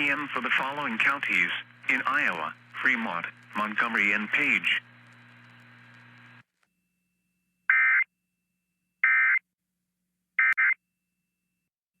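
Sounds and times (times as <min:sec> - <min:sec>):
faint steady hum: 0:00.0 - 0:07.6.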